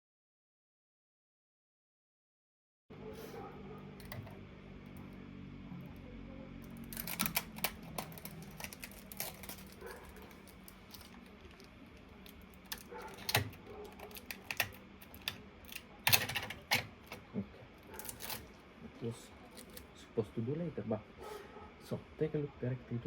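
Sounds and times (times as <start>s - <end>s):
small hard parts clicking and rattling: 6.6s - 18.5s
packaging being handled: 6.8s - 18.6s, 19.4s - 19.9s.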